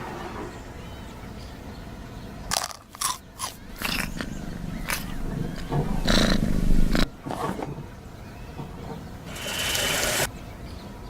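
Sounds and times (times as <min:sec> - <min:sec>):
crunchy food being chewed: 0:02.5 - 0:05.1.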